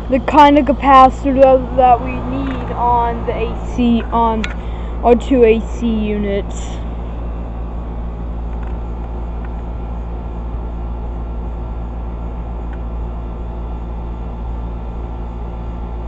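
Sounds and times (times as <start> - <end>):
air conditioner compressor hum: 0.0 - 16.0
condenser fan whirring: 0.0 - 16.0.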